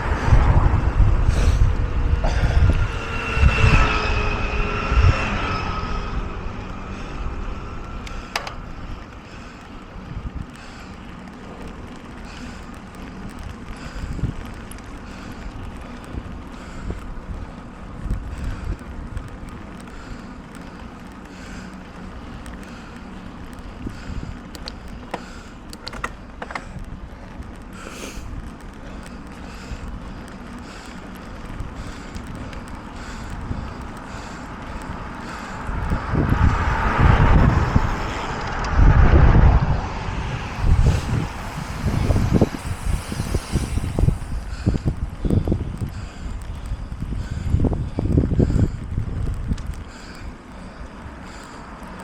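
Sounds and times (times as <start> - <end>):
vehicle engine passing: 0.0 - 9.1, 34.5 - 45.2
wind rumbling on microphone: 0.0 - 52.0
breath-like hiss: 1.2 - 2.8, 27.7 - 29.9, 39.8 - 47.6.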